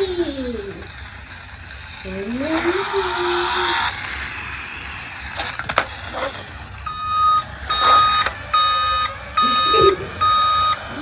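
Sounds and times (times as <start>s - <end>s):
electronic beeping: 6.8s - 10.8s.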